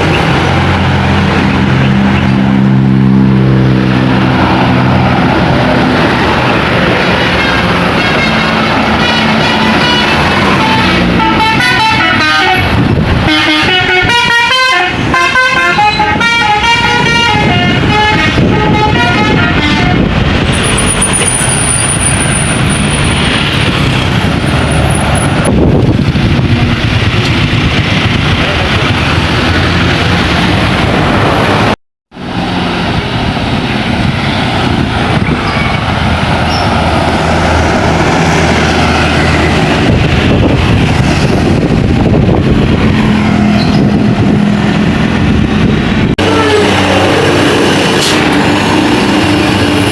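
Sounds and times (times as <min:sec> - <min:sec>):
passing traffic noise: 0:00.0 - 0:49.9
multi-tone musical bus horn: 0:07.2 - 0:20.2, 0:46.2 - 0:48.2.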